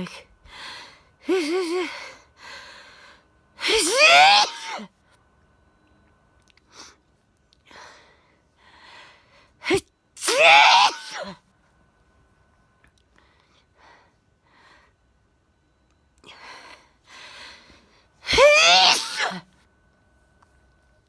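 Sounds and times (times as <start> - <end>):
woman sneezing: 3.6 - 4.9, 9.6 - 11.4, 18.3 - 19.4.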